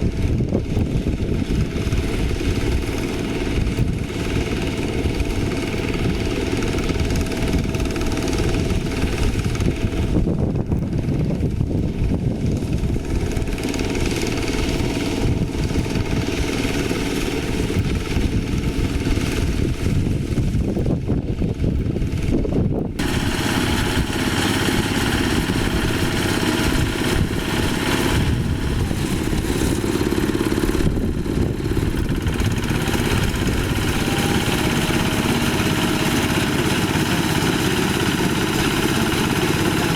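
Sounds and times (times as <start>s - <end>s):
harvester diesel engine running: 0.0s - 39.9s.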